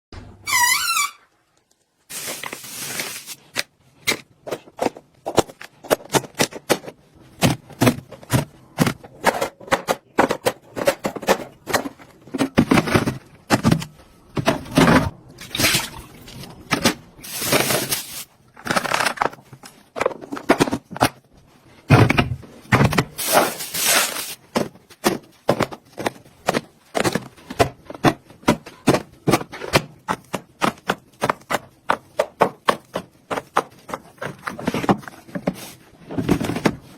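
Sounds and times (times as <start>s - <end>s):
containers and bottles clattering: 8.2s - 21.1s.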